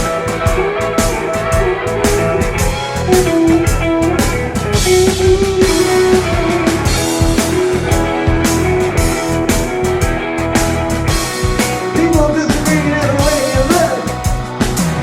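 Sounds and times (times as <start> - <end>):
bass: 0.0 - 15.0
drum kit beat: 0.0 - 15.0
guitar melody: 0.0 - 15.0.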